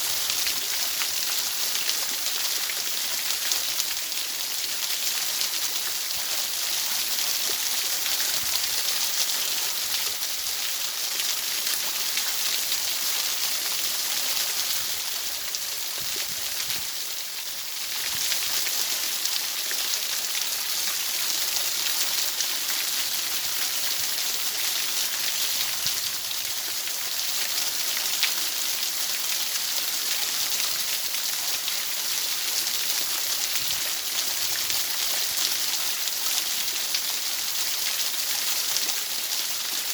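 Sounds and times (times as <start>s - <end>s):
rain on a surface: 0.0s - 39.9s.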